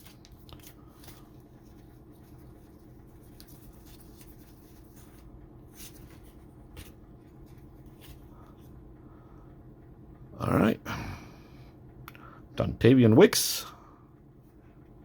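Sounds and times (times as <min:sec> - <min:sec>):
cards brushing against cards: 0:00.0 - 0:08.3
steady low hum: 0:00.0 - 0:15.0.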